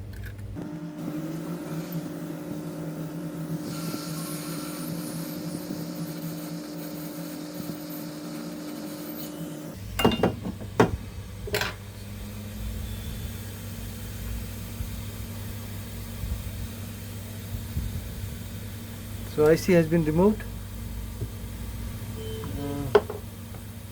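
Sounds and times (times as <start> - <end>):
hot air blower hum: 0.6 - 23.9.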